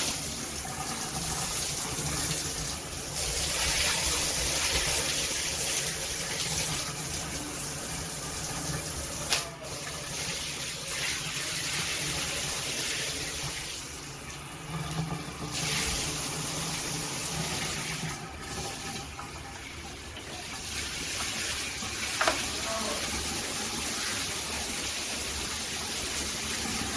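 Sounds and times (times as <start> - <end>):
shower water spraying: 0.0 - 19.7.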